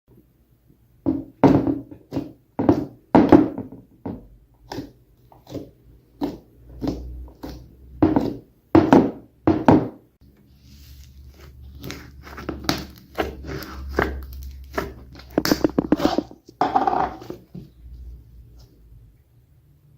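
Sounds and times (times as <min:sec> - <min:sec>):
slime squishing by hand: 0:04.5 - 0:08.5, 0:10.3 - 0:18.8.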